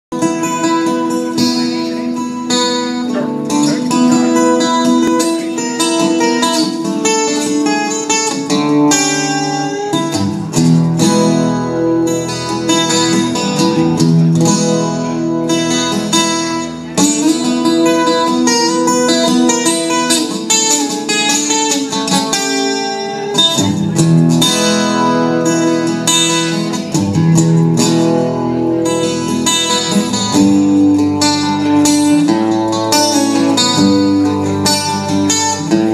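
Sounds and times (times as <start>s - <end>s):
guitar strumming chords: 0.1s - 35.9s.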